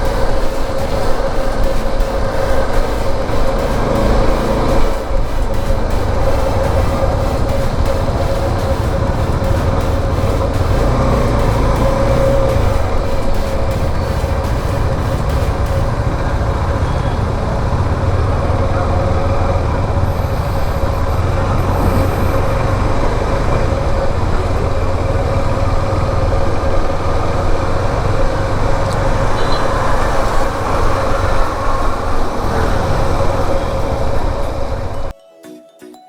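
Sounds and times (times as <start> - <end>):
faint steady hum: 0.0 - 23.0
vehicle engine and road noise: 0.0 - 35.1.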